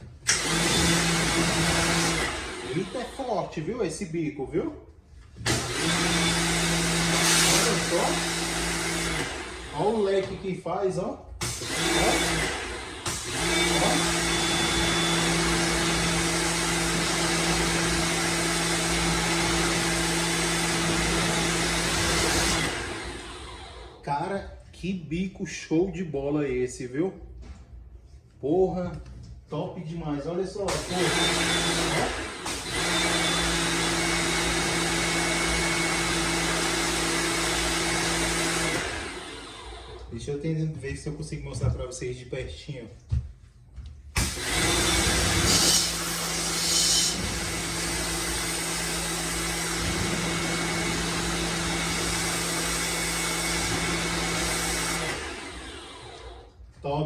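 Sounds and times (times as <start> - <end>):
pressure washer motor hum: 0.2 - 3.5, 5.4 - 10.4, 11.4 - 24.0, 30.7 - 40.1, 44.2 - 56.6.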